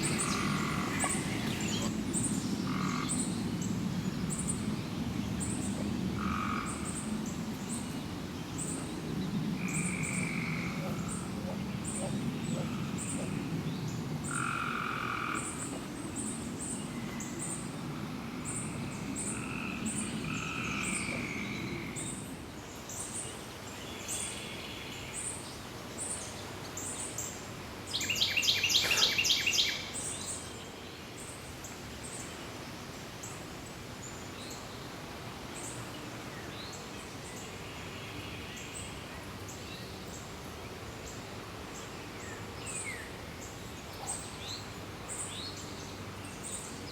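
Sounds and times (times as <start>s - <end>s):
rapid chattering bird call: 0.0s - 1.9s
birds singing and calling: 0.0s - 14.4s, 27.9s - 30.5s
low murmur of frogs: 0.0s - 25.3s, 26.0s - 31.5s, 33.2s - 46.9s.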